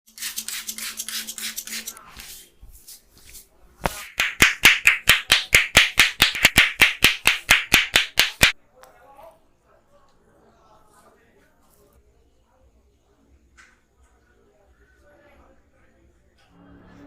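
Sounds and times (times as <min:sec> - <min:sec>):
soft rubbing strokes: 0:00.1 - 0:04.1
sharp hand slaps: 0:03.8 - 0:08.6.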